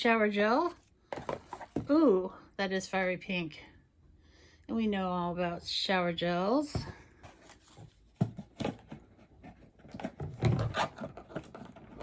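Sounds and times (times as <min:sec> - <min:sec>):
cardboard drawer knocking and scraping: 0:08.1 - 0:12.0.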